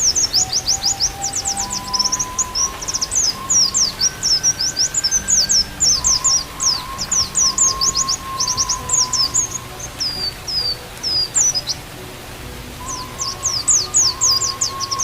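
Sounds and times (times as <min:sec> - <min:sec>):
bamboo flute steady note: 0:00.0 - 0:15.0
bird chirping song: 0:00.0 - 0:15.0.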